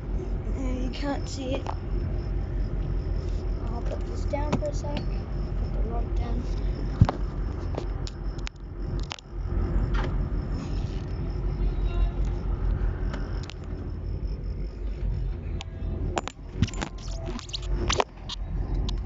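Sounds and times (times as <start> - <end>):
boat engine rumbling: 0.0 - 19.0
knocks and clicks of gear: 3.8 - 5.2, 6.9 - 9.3, 15.6 - 19.0.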